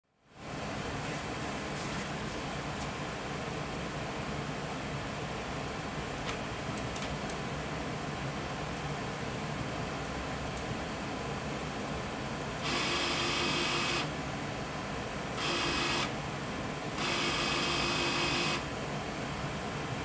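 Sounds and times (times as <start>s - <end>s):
power supply hum: 5.4s - 20.0s.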